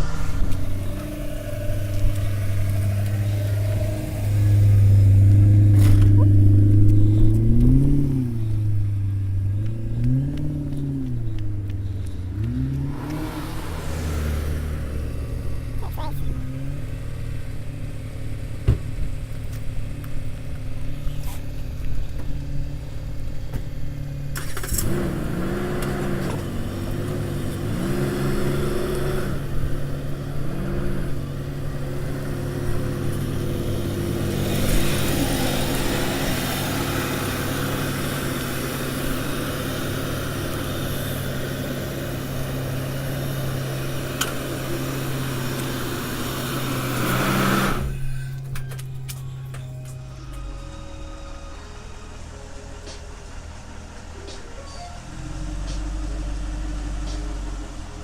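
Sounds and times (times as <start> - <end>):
car engine idling and revving: 0.0 - 58.0.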